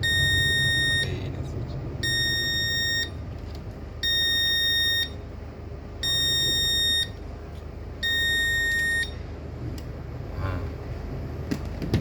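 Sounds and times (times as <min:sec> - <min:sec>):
fire alarm panel buzzer beeping: 0:00.0 - 0:01.1, 0:02.0 - 0:03.2, 0:04.0 - 0:05.3, 0:06.0 - 0:07.2, 0:08.0 - 0:09.3.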